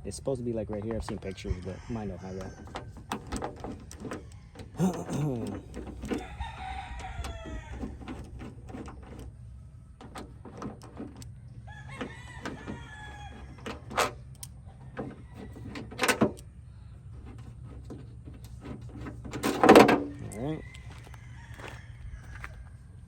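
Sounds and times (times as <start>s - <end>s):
rooster crowing: 1.3s - 2.8s, 6.0s - 8.2s, 11.6s - 13.9s, 20.0s - 23.0s
chickens calling: 20.0s - 23.0s.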